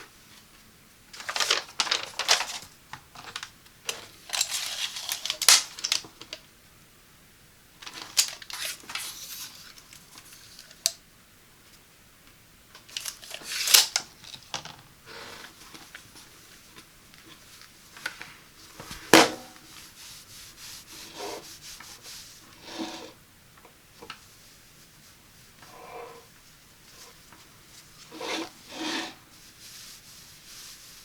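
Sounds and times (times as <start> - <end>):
packaging rustling and crinkling: 1.1 - 6.3, 7.8 - 10.9, 12.8 - 14.8.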